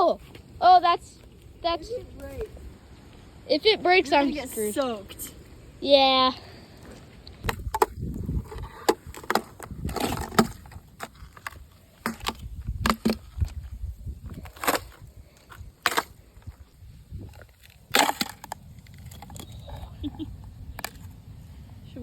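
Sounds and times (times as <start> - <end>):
wind rumble on microphone: 7.3 - 17.6
ice cracking underfoot: 7.4 - 19.7.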